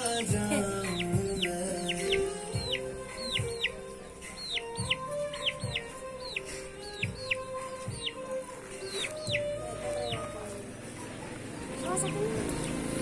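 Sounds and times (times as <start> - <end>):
chicken peeping: 0.0 - 10.3
background music with low beat: 0.0 - 13.0.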